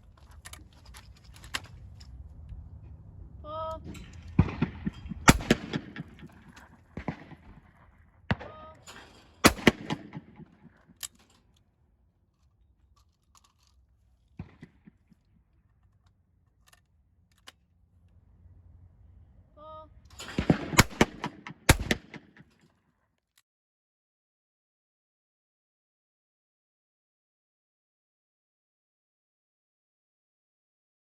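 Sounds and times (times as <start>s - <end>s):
person shouting: 3.4s - 3.8s, 19.6s - 19.9s
loud shotgun shots: 3.9s - 10.8s, 20.2s - 22.4s
distant gunshots: 3.9s - 11.0s, 20.2s - 22.5s.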